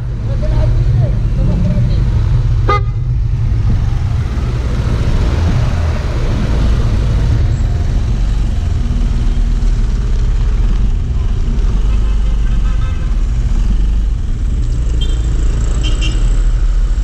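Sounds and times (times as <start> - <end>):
road rumble: 0.0 - 17.0
wind buffeting microphone: 0.7 - 11.7.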